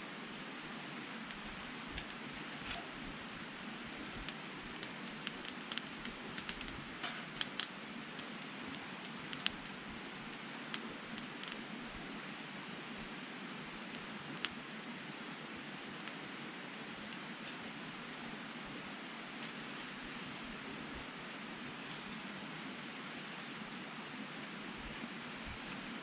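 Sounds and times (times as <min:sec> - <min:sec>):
wood fire crackling: 0:01.1 - 0:12.1, 0:13.7 - 0:14.7, 0:16.9 - 0:17.5.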